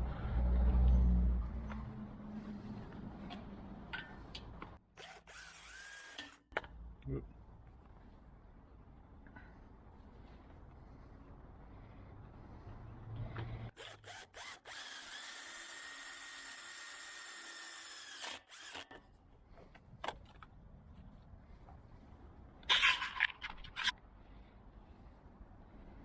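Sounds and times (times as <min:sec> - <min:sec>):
power drill whining: 0:05.0 - 0:06.5, 0:13.7 - 0:19.0.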